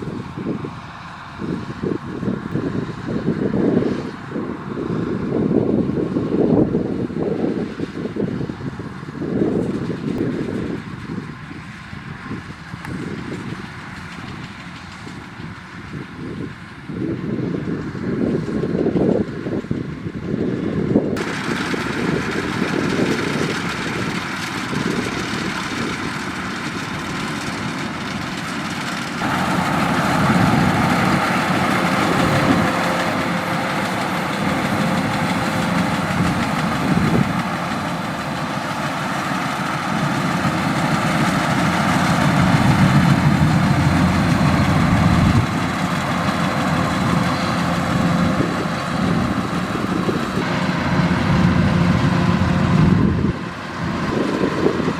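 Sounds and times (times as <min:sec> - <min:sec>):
combine harvester running: 0:00.0 - 0:54.9
high machinery whirr: 0:21.2 - 0:54.9.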